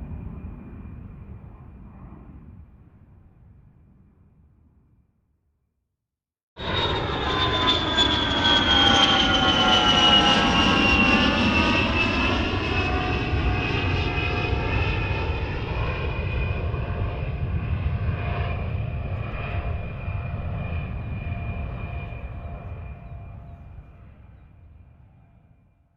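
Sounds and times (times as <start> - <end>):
jet engine roar passing: 6.6 - 25.3.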